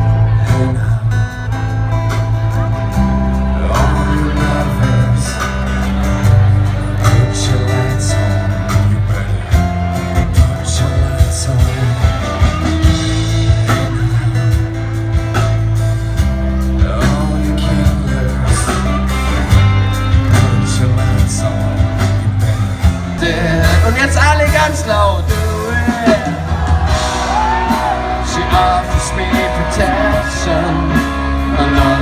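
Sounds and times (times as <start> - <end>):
bass notes: 0.0 - 32.0
guitar: 0.0 - 32.0
drum hits: 22.8 - 31.2.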